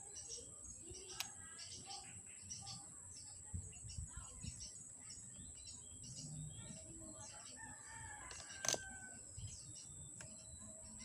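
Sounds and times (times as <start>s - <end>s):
small birds chirping: 0.0s - 11.0s
rooster crowing: 7.6s - 9.2s.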